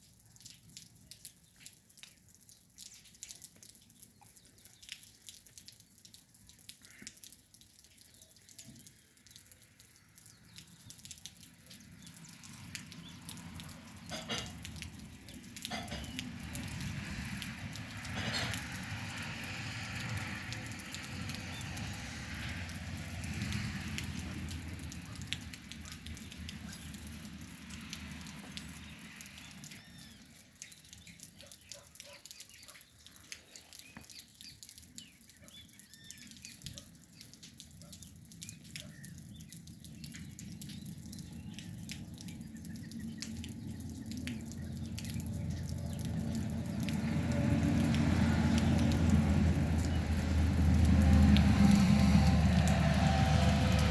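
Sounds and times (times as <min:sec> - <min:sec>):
light rain falling and dripping: 0:00.0 - 0:53.9.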